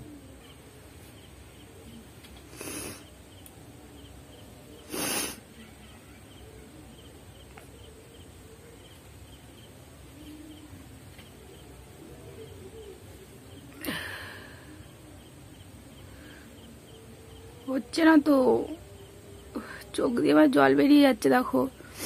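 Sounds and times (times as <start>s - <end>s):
faint chirping: 0.0s - 22.0s
sharp breaths through the nose: 4.9s - 5.4s.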